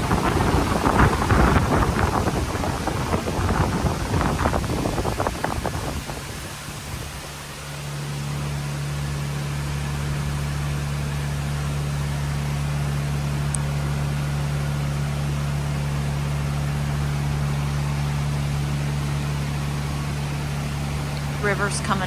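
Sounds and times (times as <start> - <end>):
steady rushing noise: 0.0 - 7.7
constant low hum: 0.0 - 22.0.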